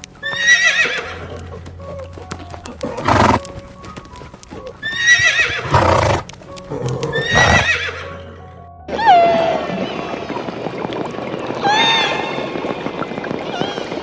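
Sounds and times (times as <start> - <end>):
horse whinnying: 0.2 - 2.1, 2.8 - 3.4, 4.6 - 10.3.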